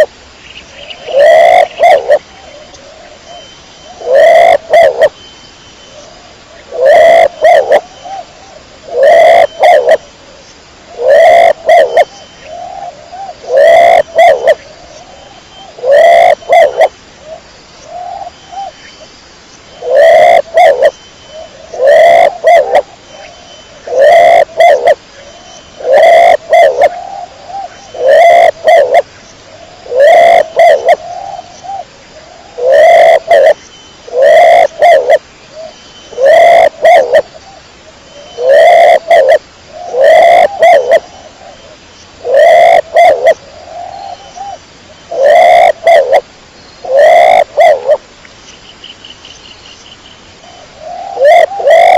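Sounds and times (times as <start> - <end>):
pigeon cooing: 1.0 - 5.1, 6.7 - 8.2, 8.9 - 10.0, 11.0 - 14.6, 15.8 - 16.9, 19.8 - 20.9, 21.6 - 22.9, 23.8 - 25.0, 25.8 - 29.0, 29.8 - 35.2, 36.1 - 37.3, 38.2 - 41.6, 42.2 - 46.2, 46.8 - 48.0, 50.8 - 51.9.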